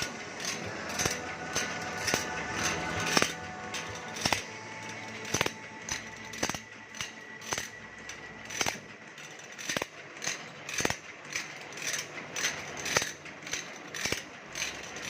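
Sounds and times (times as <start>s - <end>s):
metal file scraping saw teeth: 0.0s - 8.9s.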